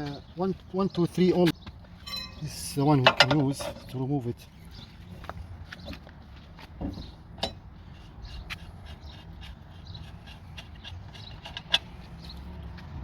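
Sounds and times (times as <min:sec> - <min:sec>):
tool and metal parts clicking: 0:02.0 - 0:04.0, 0:10.2 - 0:12.3.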